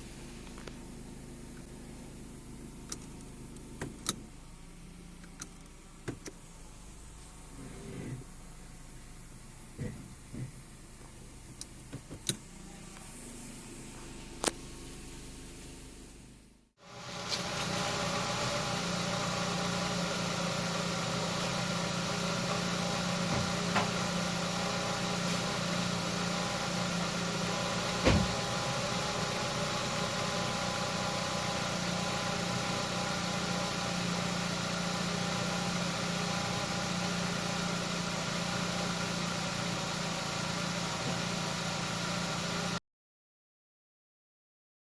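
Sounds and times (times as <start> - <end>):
car engine idling: 16.8 - 42.8
sharp engine knocks: 27.6 - 28.6.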